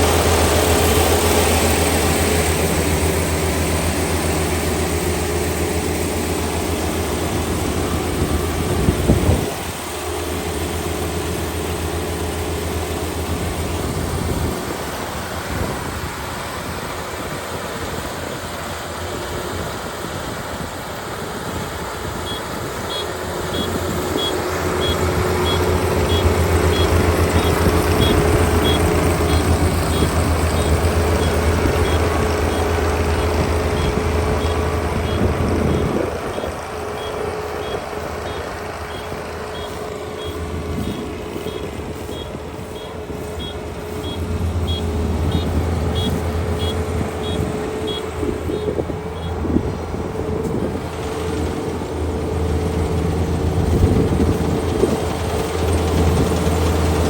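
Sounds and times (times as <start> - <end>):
diesel engine running: 0.0 - 57.0
high electronic beep: 22.2 - 49.3.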